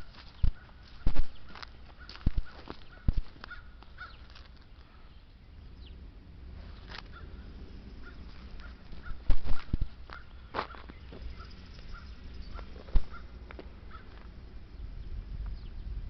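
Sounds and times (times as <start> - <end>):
steady low rumble: 0.0 - 16.0
sharp thumps: 0.4 - 3.5, 8.3 - 11.3
crow cawing: 1.9 - 5.1, 7.0 - 14.2.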